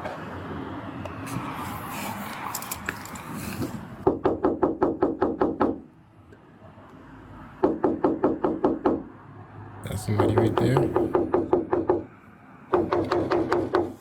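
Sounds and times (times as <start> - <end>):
rapid knocking: 10.1 - 12.1, 12.7 - 14.0.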